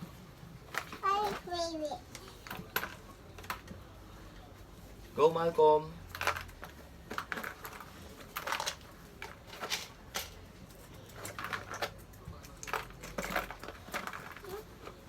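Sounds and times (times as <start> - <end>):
beans clicking and rattling: 6.1 - 15.0.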